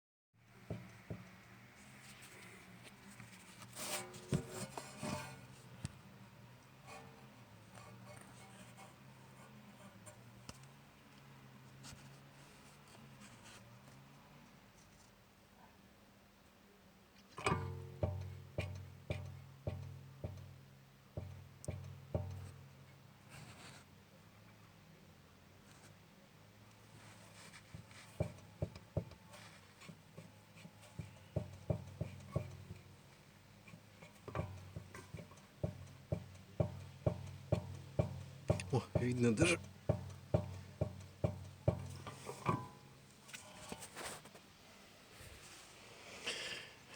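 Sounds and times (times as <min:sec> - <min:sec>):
car suspension knocking: 0:00.5 - 0:01.7, 0:03.4 - 0:05.5, 0:17.4 - 0:22.8, 0:27.0 - 0:43.2
scratching and rubbing: 0:01.8 - 0:05.8, 0:06.8 - 0:10.4, 0:26.9 - 0:28.6, 0:33.6 - 0:44.5.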